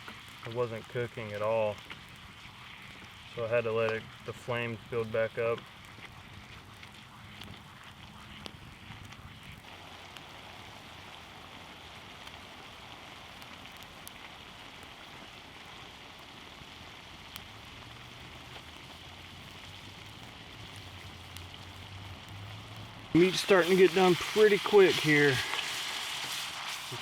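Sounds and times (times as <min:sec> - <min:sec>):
burning wood crackling: 0:00.0 - 0:27.0
meat sizzling in a pan: 0:08.2 - 0:27.0.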